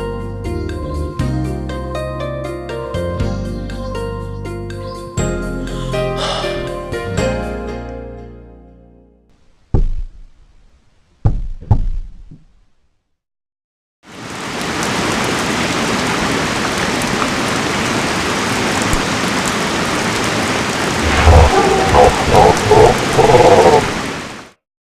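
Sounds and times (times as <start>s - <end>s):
heavy thumps: 9.6s - 12.7s
loud rain-like hiss: 14.1s - 24.6s.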